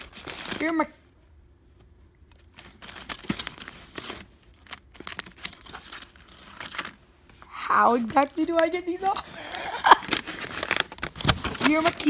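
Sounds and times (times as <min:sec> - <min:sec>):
handcuff chain clinking and clicking: 0:02.3 - 0:07.0.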